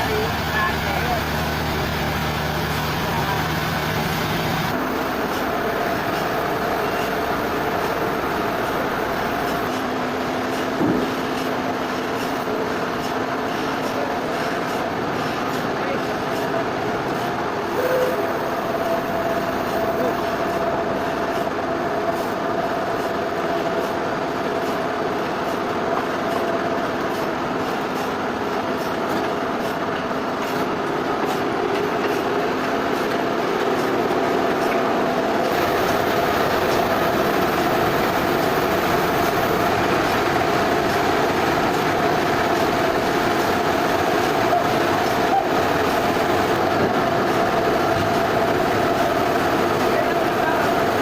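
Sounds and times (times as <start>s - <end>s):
sawmill machinery drone: 0.0s - 51.0s.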